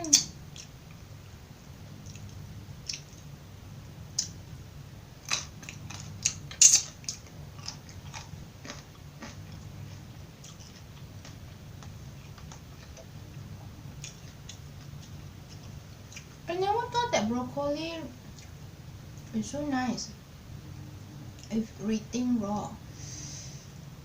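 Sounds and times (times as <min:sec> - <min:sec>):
broccoli being bitten and chewed: 0:05.3 - 0:13.1.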